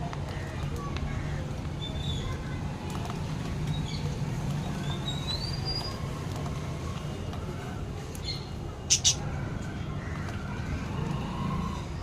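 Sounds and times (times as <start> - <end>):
sharp loud bird calls: 8.9 - 9.2.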